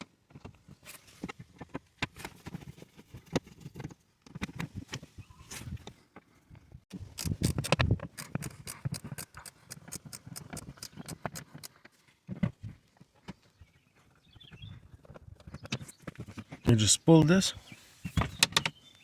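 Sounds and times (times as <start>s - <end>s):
screwdriver clicking on plastic screws: 7.0s - 11.7s.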